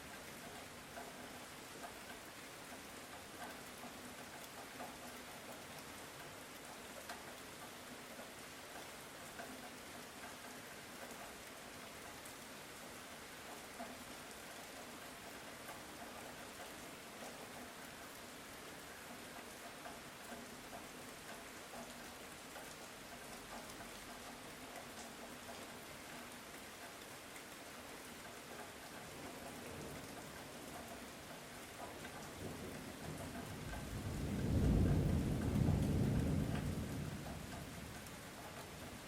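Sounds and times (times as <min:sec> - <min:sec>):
light rain: 0:00.0 - 0:39.0
distant thunder rolling: 0:32.7 - 0:38.0.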